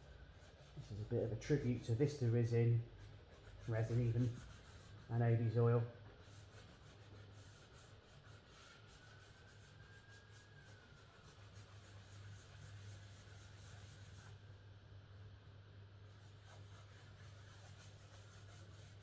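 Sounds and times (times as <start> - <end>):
pad rubbing on wood surface: 3.0 - 5.5, 6.1 - 14.4, 16.1 - 19.0.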